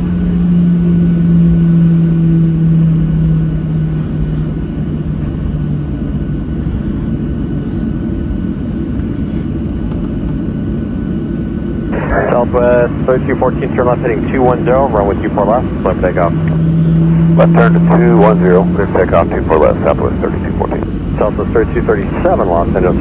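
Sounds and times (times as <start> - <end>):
humming tone sinking in pitch: 0.0 - 6.3, 11.9 - 23.0
airplane cabin engine rumble: 0.0 - 23.0.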